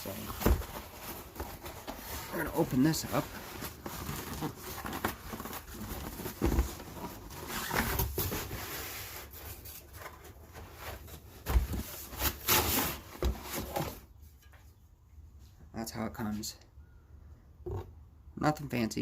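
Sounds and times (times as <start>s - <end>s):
cardboard rubbing and scraping: 0.0s - 14.1s.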